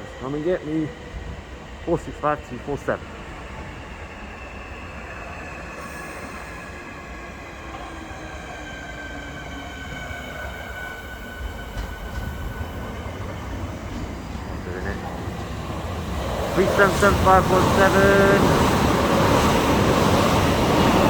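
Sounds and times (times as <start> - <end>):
train low rumble: 5.0 - 21.0.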